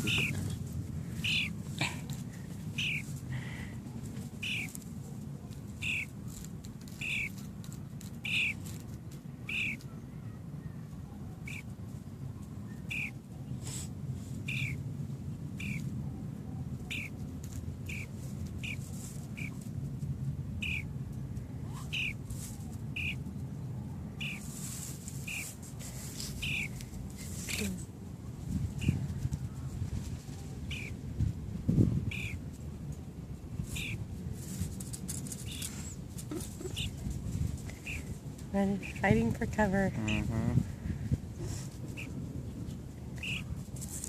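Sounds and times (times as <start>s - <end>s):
young starling calls: 0.0s - 0.4s, 1.2s - 1.6s, 2.8s - 3.0s, 4.4s - 4.8s, 5.8s - 6.1s, 6.9s - 7.4s, 8.2s - 8.6s, 9.4s - 9.8s, 11.4s - 11.7s, 12.8s - 13.2s, 14.4s - 14.8s, 15.6s - 15.9s, 16.9s - 17.2s, 17.9s - 18.8s, 19.4s - 19.6s, 20.6s - 20.9s, 21.9s - 22.2s, 22.9s - 23.2s, 24.2s - 24.5s, 25.2s - 25.5s, 26.4s - 26.7s, 30.6s - 31.0s, 32.1s - 32.4s, 33.6s - 34.0s, 35.4s - 35.7s, 36.6s - 37.0s, 37.7s - 38.1s, 41.9s - 42.2s, 43.2s - 43.5s
steady low rumble: 0.0s - 44.0s.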